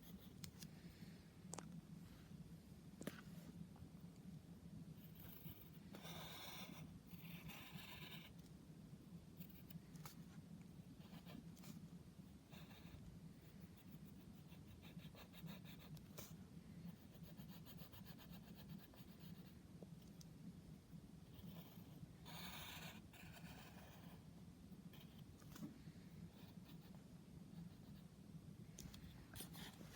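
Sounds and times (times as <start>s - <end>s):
steady low hum: 0.0s - 29.9s
drawing tool scratching on paper: 5.0s - 8.4s, 12.4s - 16.4s, 17.0s - 19.6s, 21.3s - 24.2s.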